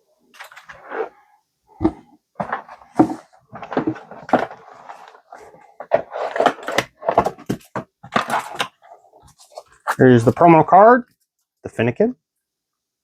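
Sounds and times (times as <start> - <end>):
cardboard box rustling and crinkling: 1.8 - 9.9.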